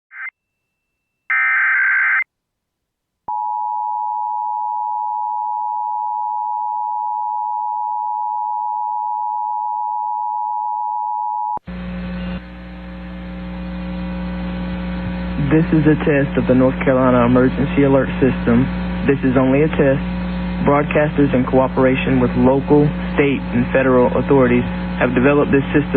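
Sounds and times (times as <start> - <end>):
low hum and hiss: 11.7 - 25.9.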